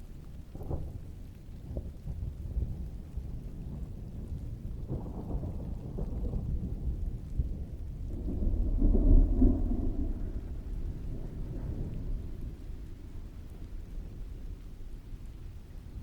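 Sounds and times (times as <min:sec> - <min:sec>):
heavy rain: 0:00.0 - 0:16.0
distant thunder rolling: 0:01.8 - 0:16.0.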